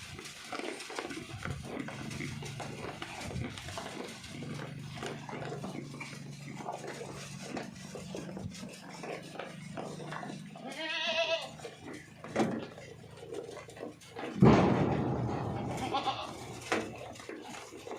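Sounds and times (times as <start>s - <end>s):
goat bleating: 9.2s - 12.2s, 15.2s - 17.1s.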